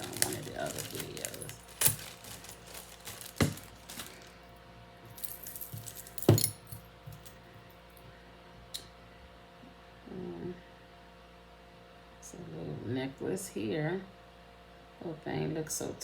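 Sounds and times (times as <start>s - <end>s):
metal jewelry clinking: 0.0s - 4.4s, 5.1s - 7.4s.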